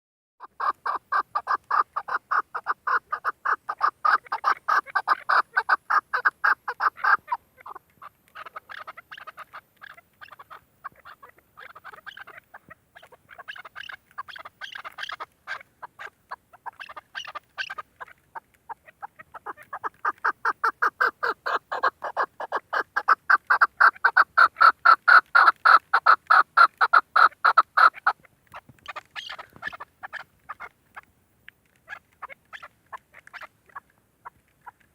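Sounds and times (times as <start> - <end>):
partridge clucking calls: 0.4 - 34.9.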